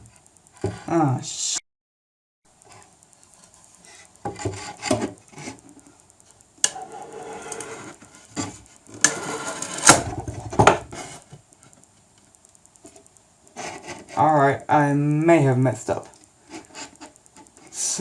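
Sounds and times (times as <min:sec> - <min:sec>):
wood scraping on desk: 0:03.8 - 0:05.7, 0:06.7 - 0:11.3.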